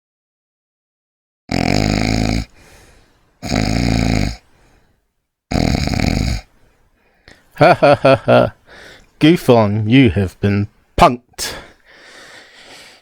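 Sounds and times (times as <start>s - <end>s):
person snoring: 1.5s - 4.8s, 5.5s - 6.6s.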